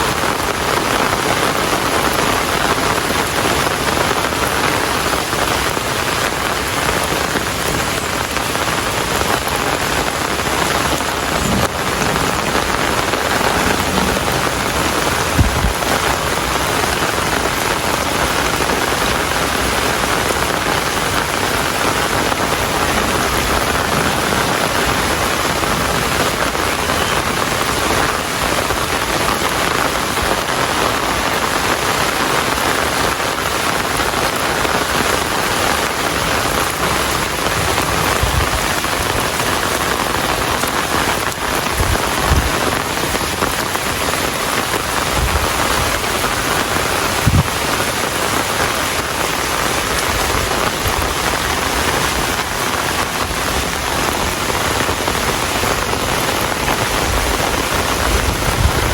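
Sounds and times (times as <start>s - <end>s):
steady rain falling: 0.0s - 58.9s
low thump: 11.4s - 15.9s.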